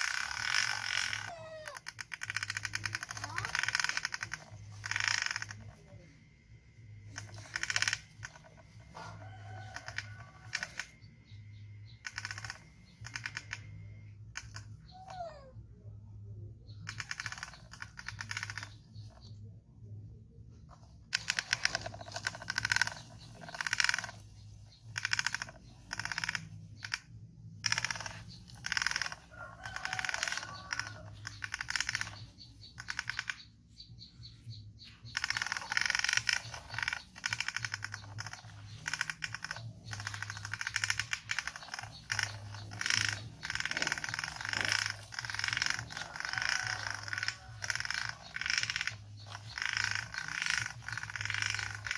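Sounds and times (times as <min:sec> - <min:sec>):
plastic toy truck rattling on floor: 0:00.0 - 0:05.8, 0:20.7 - 0:33.4, 0:35.2 - 0:51.9.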